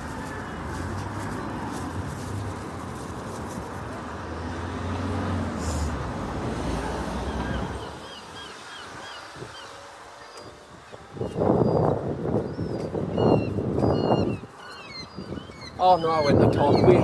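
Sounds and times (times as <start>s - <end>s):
vehicle passing: 0.0s - 10.0s
road traffic: 0.0s - 17.0s
wind buffeting microphone: 10.4s - 17.0s.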